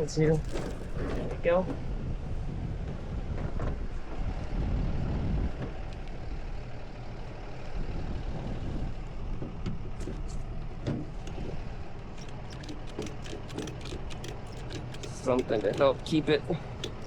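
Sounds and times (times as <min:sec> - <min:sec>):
truck engine running: 0:00.3 - 0:17.0
light clicks: 0:11.2 - 0:17.0.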